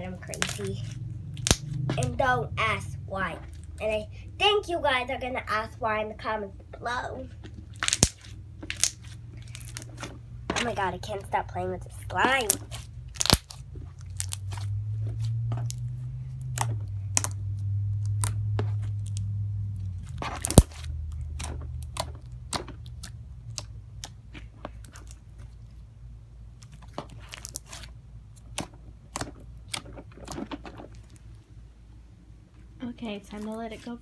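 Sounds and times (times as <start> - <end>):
low hum: 0.0 - 26.9
slime clicking and popping: 0.3 - 0.8, 1.4 - 2.1, 7.8 - 10.0, 12.3 - 14.6, 15.6 - 19.2, 20.3 - 25.3, 26.6 - 31.3.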